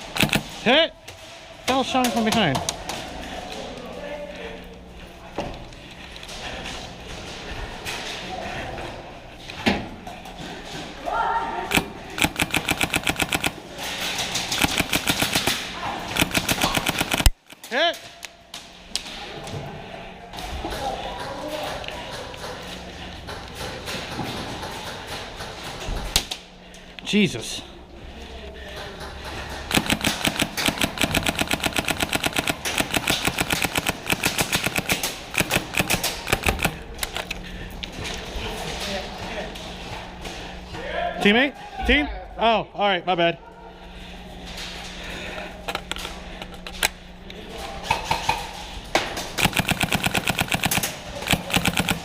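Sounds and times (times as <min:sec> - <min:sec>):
airsoft guns firing rapidly: 0:00.0 - 0:00.6, 0:11.7 - 0:13.6, 0:14.3 - 0:17.6, 0:29.7 - 0:36.8, 0:49.4 - 0:52.0
airsoft gun shots: 0:00.1 - 0:00.5.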